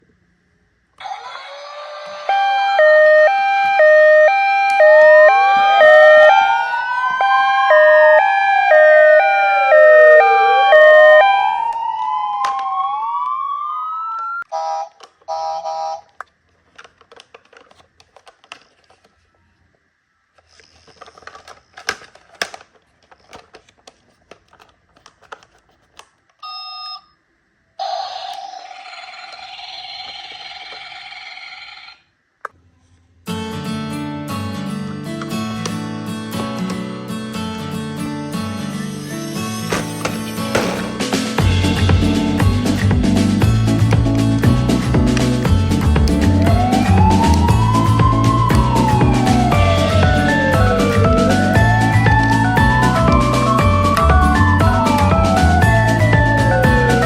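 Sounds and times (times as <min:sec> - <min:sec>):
toy sirens wailing: 0:01.0 - 0:16.1, 0:27.8 - 0:32.1, 0:46.3 - 0:57.0.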